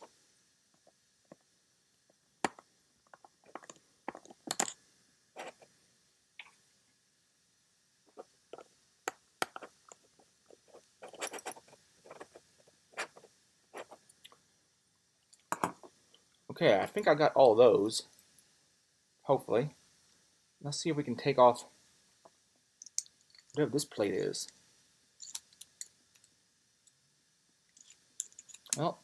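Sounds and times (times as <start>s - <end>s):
small metal parts clinking: 3.1s - 4.8s, 22.8s - 23.6s, 25.2s - 26.4s, 27.8s - 28.8s.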